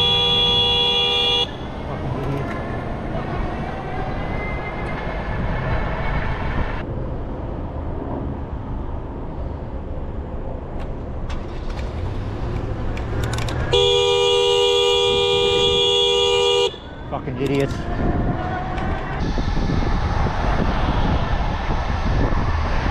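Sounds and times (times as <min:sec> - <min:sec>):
two-tone vehicle horn blast: 0:00.0 - 0:01.7, 0:13.7 - 0:17.0
road and wind noise: 0:00.0 - 0:22.9.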